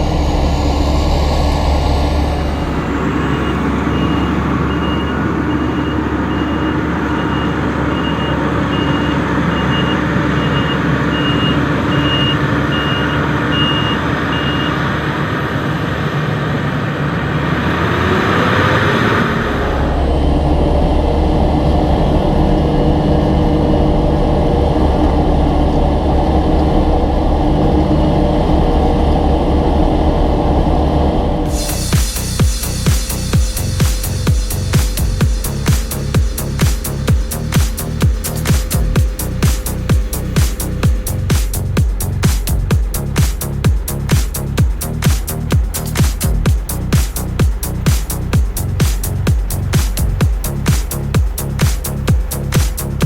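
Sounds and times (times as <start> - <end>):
heavy diesel machinery running: 0.0 - 53.0
rushing noise: 0.0 - 53.0
reversing alarm beeping: 0.8 - 14.8.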